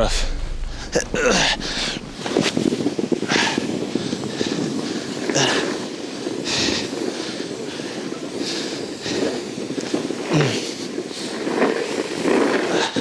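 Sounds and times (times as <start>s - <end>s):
wind buffeting microphone: 0.0s - 5.2s.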